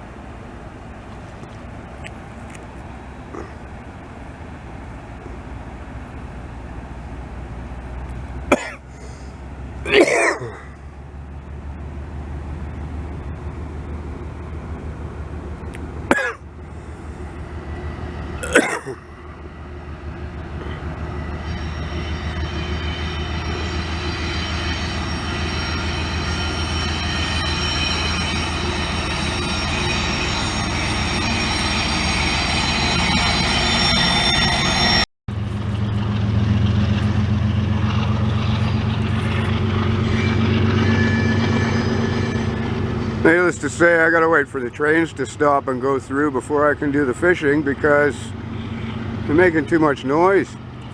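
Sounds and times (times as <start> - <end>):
train rumble: 0.0 - 50.9
wheels ringing on rail: 12.6 - 50.9.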